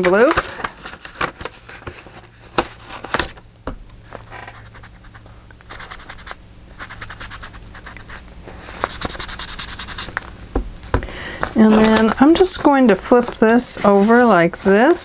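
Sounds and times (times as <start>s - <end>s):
scratchy rubbing on paper: 4.3s - 10.2s, 11.6s - 15.0s.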